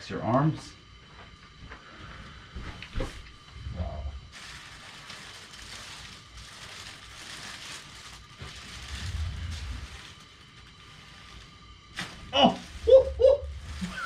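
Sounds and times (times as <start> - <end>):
clothing rustling on treatment table: 4.2 - 14.0.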